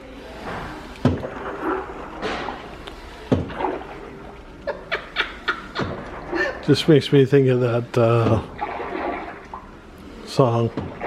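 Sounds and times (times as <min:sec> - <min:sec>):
butter churn thuds: 0:01.0 - 0:01.4, 0:03.3 - 0:03.8.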